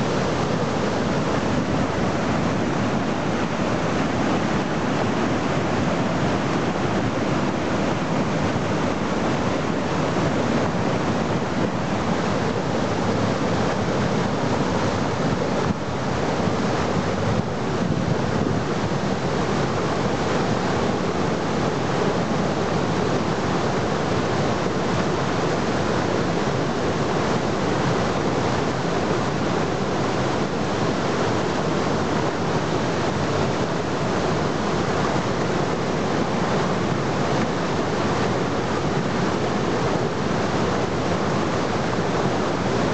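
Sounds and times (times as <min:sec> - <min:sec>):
water rushing through rapids: 0:00.0 - 0:42.9.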